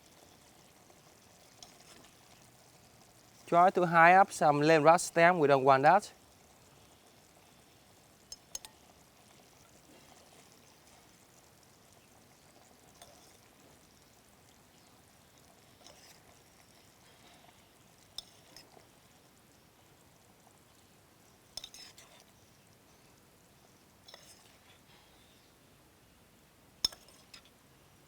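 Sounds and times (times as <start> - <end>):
utensil clinking against bowl: 26.8 - 27.5.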